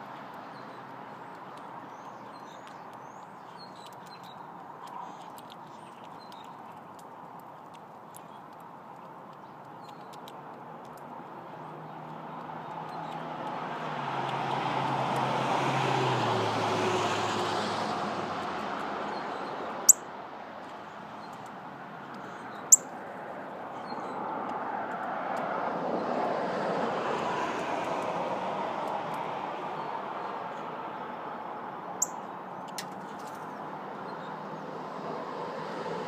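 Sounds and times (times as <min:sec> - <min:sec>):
small birds chirping: 0:00.0 - 0:13.9, 0:18.5 - 0:25.0, 0:31.8 - 0:34.8
traffic passing: 0:00.0 - 0:36.0.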